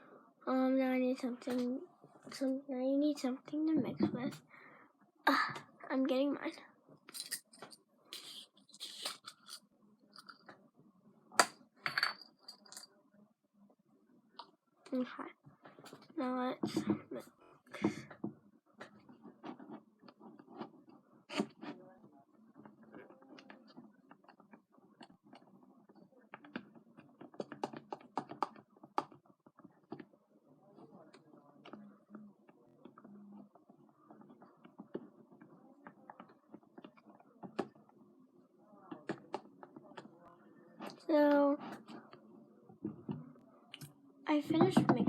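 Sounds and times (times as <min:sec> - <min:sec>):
small hard objects clinking: 0:07.1 - 0:09.6.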